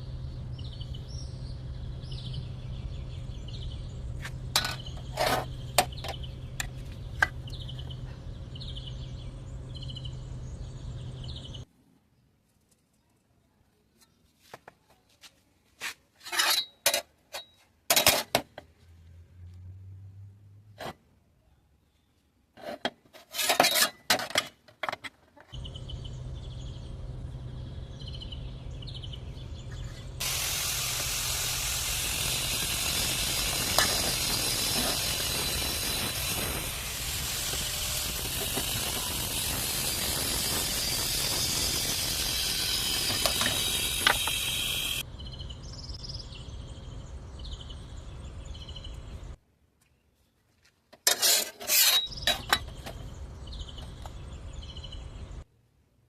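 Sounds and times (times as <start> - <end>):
short scraping strokes: 22.6 - 24.1, 51.0 - 53.0
steady hum: 25.6 - 49.3
cutting torch hissing: 30.2 - 45.0.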